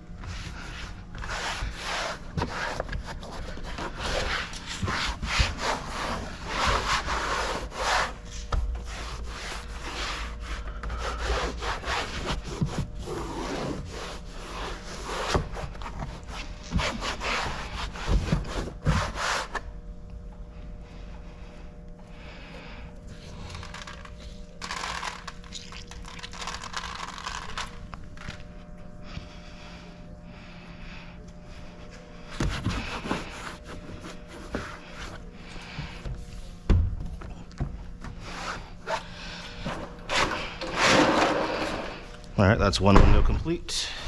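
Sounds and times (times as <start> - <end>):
rubbing and wiping on car window: 0.2 - 19.7, 32.3 - 36.0.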